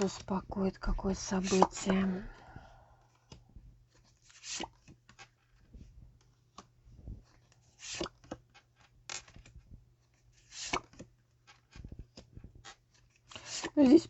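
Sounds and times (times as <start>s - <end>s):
cards sliding against each other: 7.7s - 8.4s, 10.4s - 11.0s.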